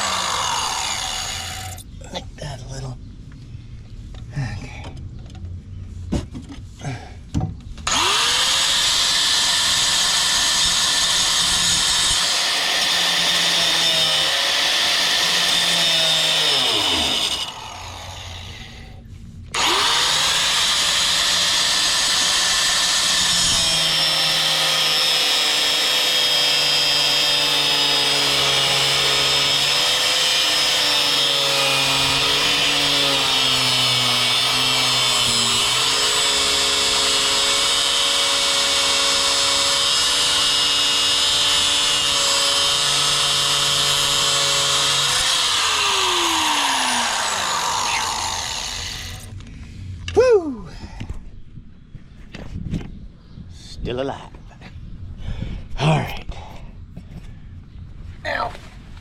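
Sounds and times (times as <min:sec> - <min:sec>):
angle grinder cutting steel: 0:00.0 - 0:01.9, 0:07.9 - 0:18.6, 0:19.6 - 0:49.4.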